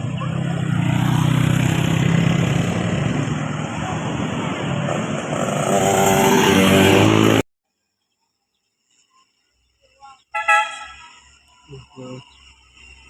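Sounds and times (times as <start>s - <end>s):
bus engine passing by: 0.0s - 7.4s
road and wind noise: 0.0s - 7.4s.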